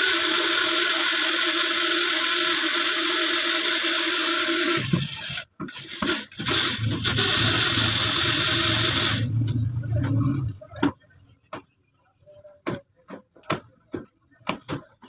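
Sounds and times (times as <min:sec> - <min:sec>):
electric motor whirring: 0:00.0 - 0:05.4, 0:06.0 - 0:10.5.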